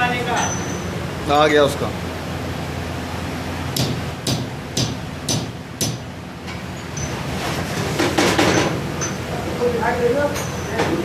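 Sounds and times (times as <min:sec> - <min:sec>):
furnace roaring: 0:00.0 - 0:11.0
sharp metallic taps: 0:03.8 - 0:06.1.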